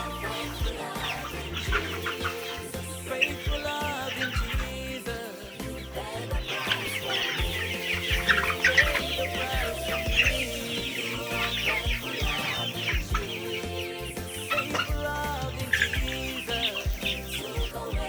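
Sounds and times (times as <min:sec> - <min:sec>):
background music: 0:00.0 - 0:18.0
young chickens calling: 0:00.0 - 0:18.0.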